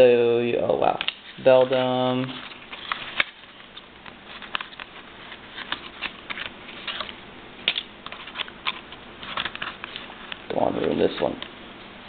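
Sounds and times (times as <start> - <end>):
trading cards handled by hand: 0.8 - 11.6
plastic packaging clicks and rustles: 1.0 - 11.5.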